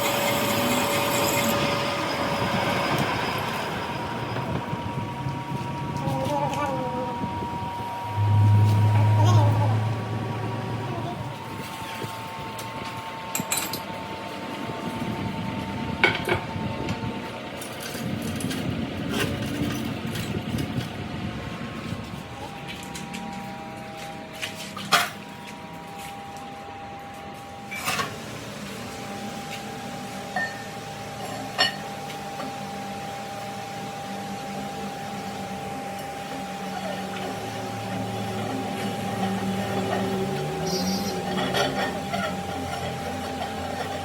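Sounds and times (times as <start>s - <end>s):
machine hum: 0.0s - 27.8s.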